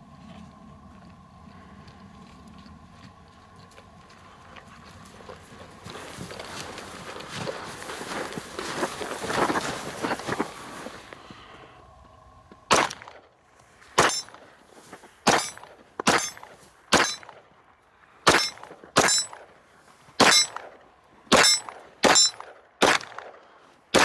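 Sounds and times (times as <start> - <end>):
pistol shots: 12.7 - 13.2, 14.0 - 14.4, 15.3 - 17.4, 18.3 - 19.4, 20.2 - 23.4
brief metallic ring: 18.3 - 19.4, 20.2 - 20.6, 21.4 - 22.4.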